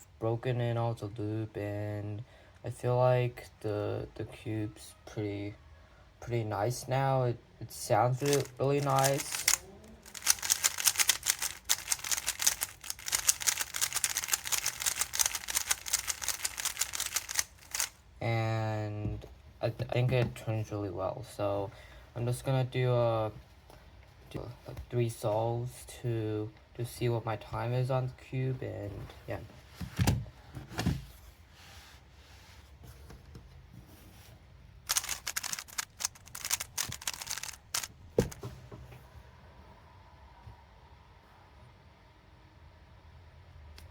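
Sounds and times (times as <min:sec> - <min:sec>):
puzzle cube plastic pieces clacking: 0:08.2 - 0:18.0, 0:34.9 - 0:38.4.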